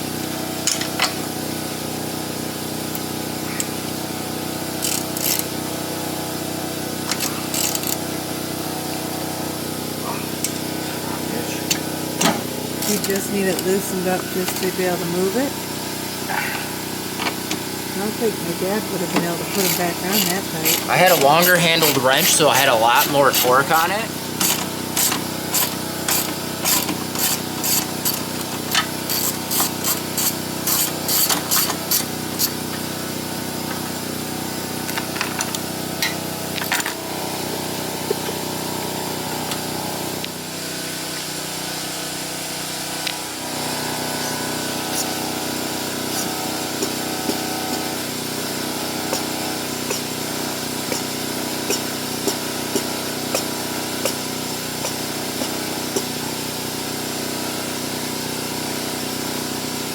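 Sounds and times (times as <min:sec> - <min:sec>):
steady machine drone: 0:00.0 - 0:59.9
wrench clicking: 0:04.8 - 0:05.5, 0:07.1 - 0:08.0, 0:24.4 - 0:32.6, 0:50.9 - 0:56.1.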